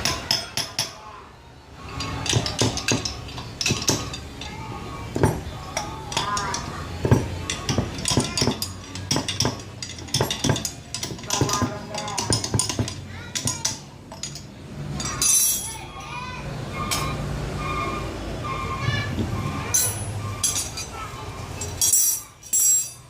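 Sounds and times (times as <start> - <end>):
metallic clinks and knocks: 1.8 - 16.2, 19.7 - 23.0.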